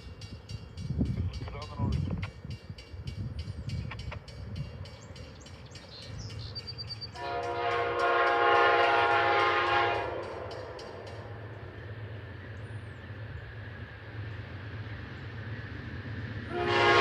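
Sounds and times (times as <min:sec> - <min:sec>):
train rumble: 0:00.0 - 0:17.0
locomotive air horn chord: 0:07.2 - 0:10.5, 0:16.5 - 0:17.0.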